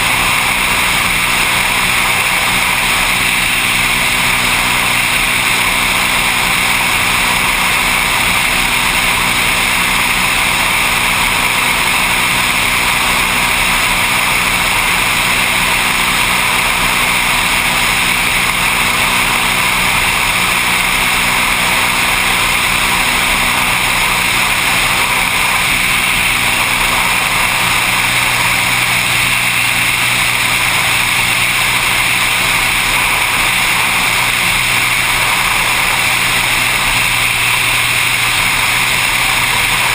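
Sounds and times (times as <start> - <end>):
plane engine and propeller drone: 0.0 - 39.9.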